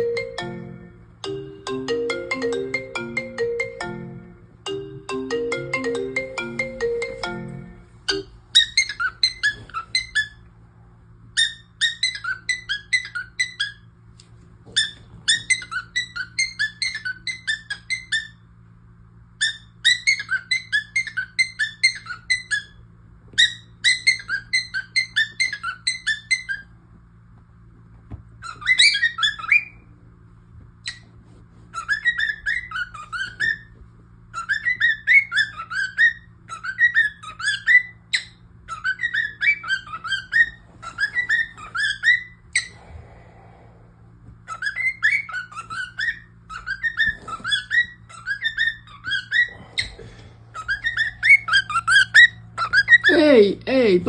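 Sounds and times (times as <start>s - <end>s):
alarm ringtone melody: 0.0s - 8.4s.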